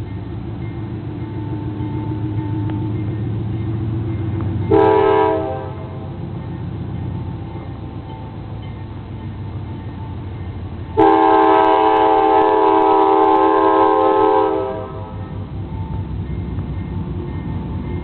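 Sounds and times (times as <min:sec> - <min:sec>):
diesel locomotive rumbling: 0:00.0 - 0:18.0
locomotive air horn chord: 0:04.7 - 0:06.2, 0:11.0 - 0:15.3.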